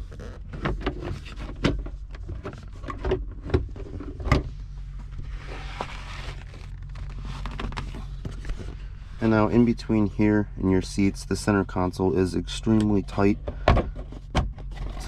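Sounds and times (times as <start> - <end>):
plastic scraping rustle: 5.3 - 8.9.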